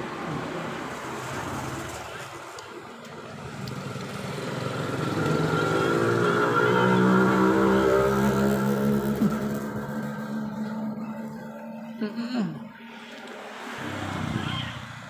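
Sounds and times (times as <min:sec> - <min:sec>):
motorcycle engine passing: 0:03.2 - 0:15.0.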